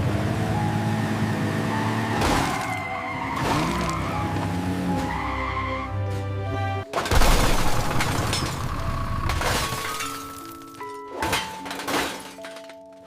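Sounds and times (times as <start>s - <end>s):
background music: 0.0s - 13.0s
toy truck crashing and shattering: 6.9s - 13.0s.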